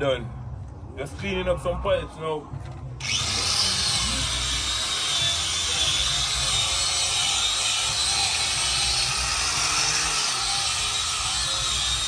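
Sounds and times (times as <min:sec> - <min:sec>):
power grinder grinding metal: 0:03.0 - 0:12.0.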